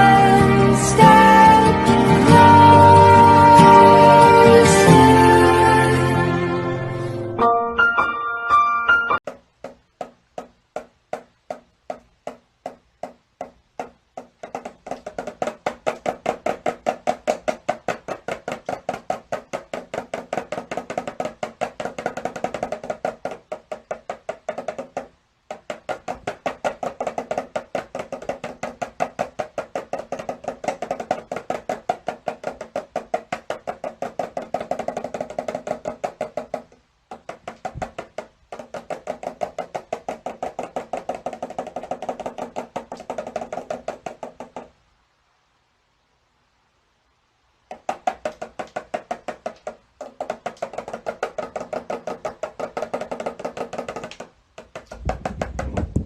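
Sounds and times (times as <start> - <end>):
rapid hollow wooden knocking: 9.2 - 44.8, 47.6 - 56.0.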